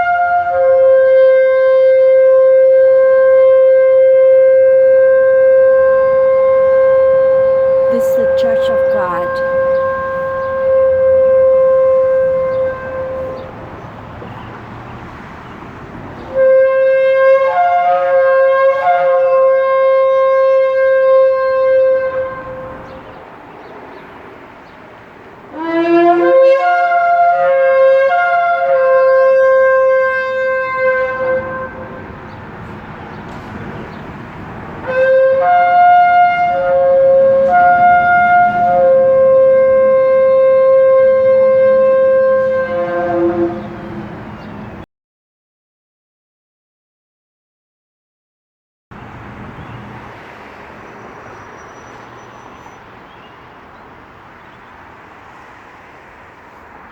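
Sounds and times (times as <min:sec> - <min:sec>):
horn blasts: 0:00.0 - 0:14.4, 0:16.2 - 0:23.0, 0:25.5 - 0:32.2, 0:34.8 - 0:44.7.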